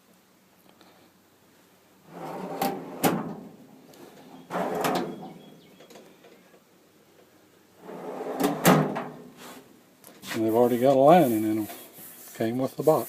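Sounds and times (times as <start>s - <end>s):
steel drawers sliding: 2.1s - 3.5s, 4.3s - 5.3s, 7.8s - 9.2s.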